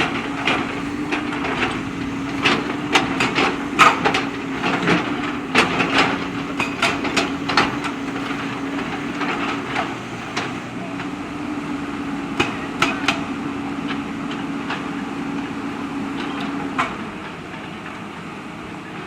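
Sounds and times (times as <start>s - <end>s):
bucket clanking against rocks: 0.0s - 10.7s
diesel engine humming: 0.0s - 19.0s.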